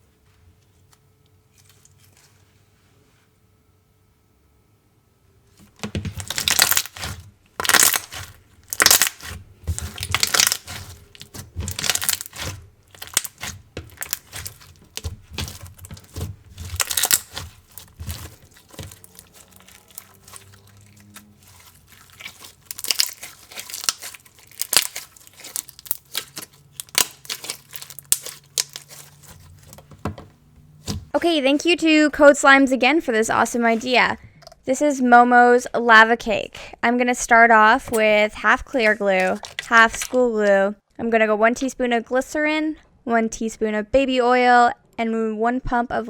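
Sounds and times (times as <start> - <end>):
slime squishing and squelching: 5.6 - 34.2, 37.7 - 40.6.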